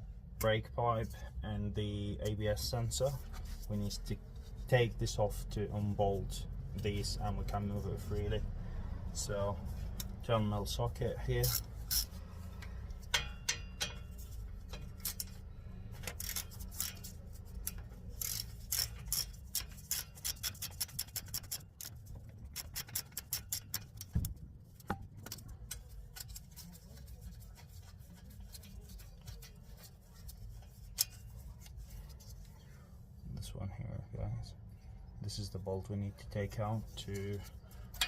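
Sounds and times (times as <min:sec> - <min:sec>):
ratchet clicking: 0:11.4 - 0:12.2, 0:13.0 - 0:15.4, 0:16.0 - 0:24.2.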